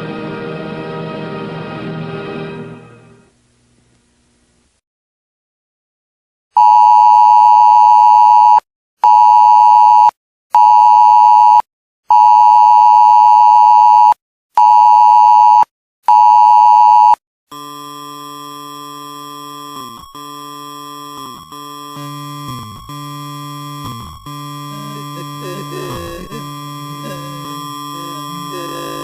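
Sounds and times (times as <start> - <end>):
steady electronic chord: 0.0 - 3.4, 17.6 - 29.0
buzzy electronic alert blasts: 19.0 - 29.0.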